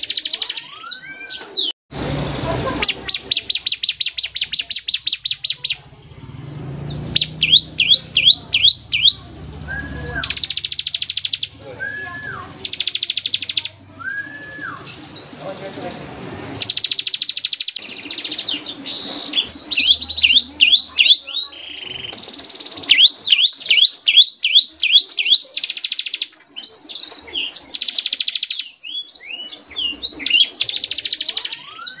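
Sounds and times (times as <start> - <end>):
bird chip notes: 2.6 - 15.4
bird singing buzzing rattles: 2.8 - 11.6, 12.5 - 13.8, 16.6 - 32.0.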